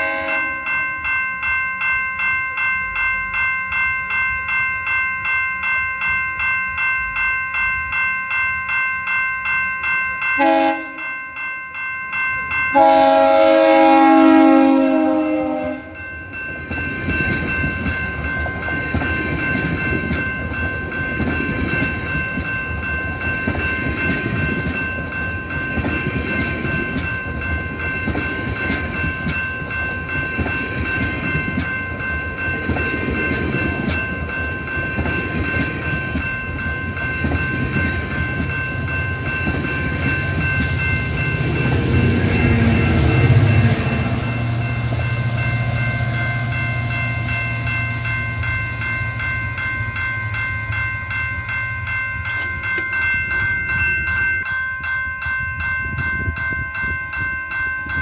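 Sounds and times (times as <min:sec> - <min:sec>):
train horn: 0:00.0 - 0:00.6, 0:10.4 - 0:11.0, 0:12.7 - 0:16.0
level-crossing bell ringing: 0:00.0 - 0:58.0
train wheels clacking: 0:16.3 - 0:45.9.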